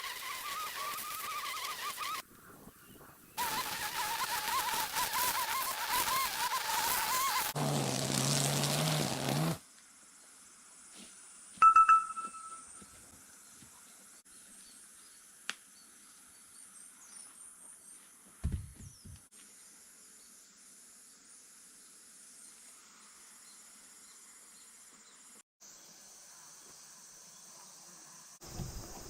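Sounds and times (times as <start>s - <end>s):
steady hiss: 0.0s - 11.6s.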